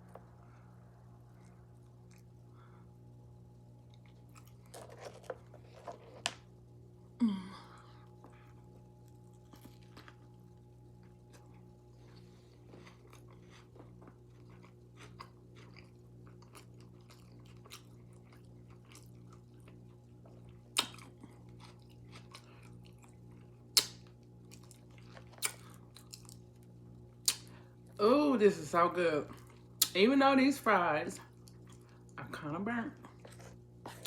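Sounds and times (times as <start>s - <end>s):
open-mouthed chewing and lip smacking: 11.0s - 28.0s, 29.3s - 30.0s, 31.2s - 32.2s.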